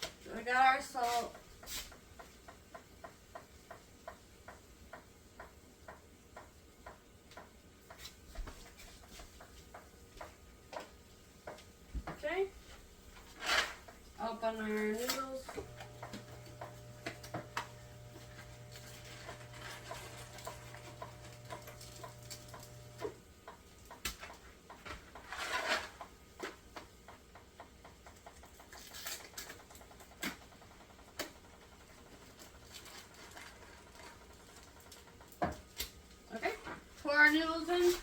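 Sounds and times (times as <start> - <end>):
steady low hum: 14.0 - 23.4
pasta box clicking and crinkling: 14.9 - 36.2.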